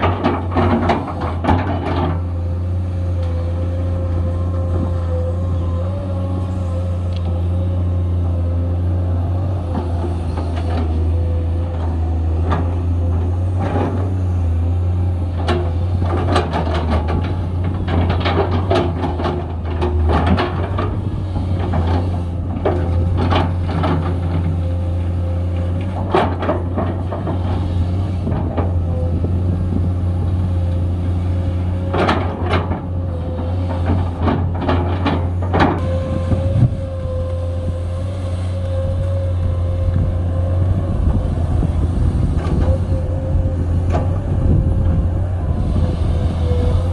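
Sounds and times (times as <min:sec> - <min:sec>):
knocks and clanks: 0:00.0 - 0:02.3, 0:15.4 - 0:24.5, 0:25.8 - 0:27.5, 0:31.8 - 0:36.8
excavator diesel engine: 0:00.0 - 0:46.9.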